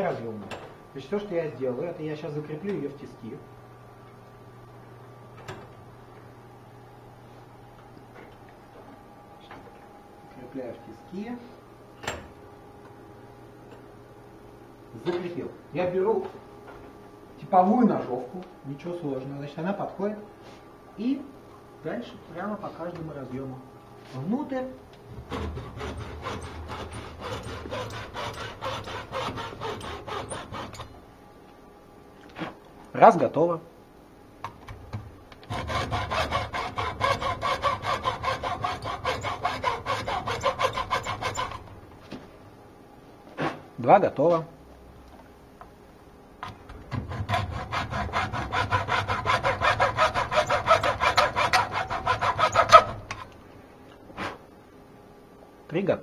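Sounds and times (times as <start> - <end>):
hand saw cutting plastic: 25.3 - 30.9, 35.4 - 41.6, 46.4 - 53.2.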